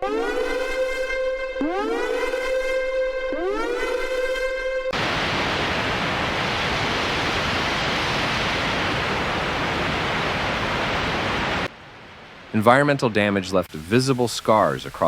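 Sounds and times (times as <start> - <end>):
fast-flowing water rushing: 5.0 - 11.7, 13.7 - 15.0.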